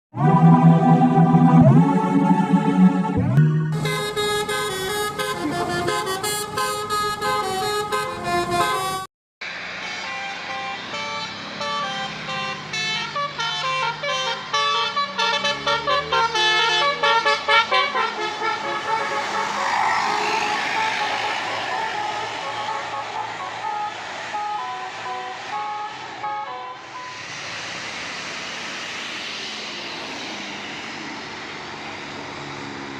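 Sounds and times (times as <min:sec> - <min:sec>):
multi-tone bus horn tune: 0:00.2 - 0:09.1, 0:09.8 - 0:27.1.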